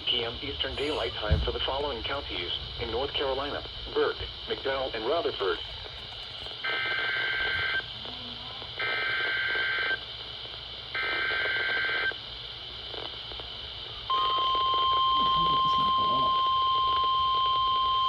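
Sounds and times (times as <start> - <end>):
radio hiss: 0.0 - 17.9
digital data bursts: 14.2 - 17.0.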